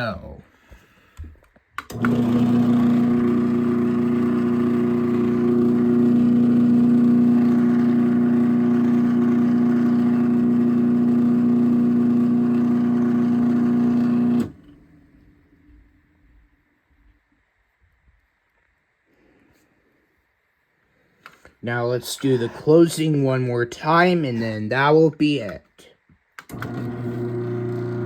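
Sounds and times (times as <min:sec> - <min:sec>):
garage door opener humming: 0:01.9 - 0:15.1, 0:26.4 - 0:28.0.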